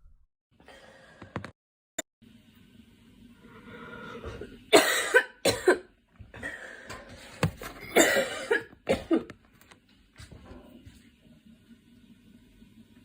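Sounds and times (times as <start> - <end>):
girl coughing: 4.8 - 5.9, 7.8 - 9.3.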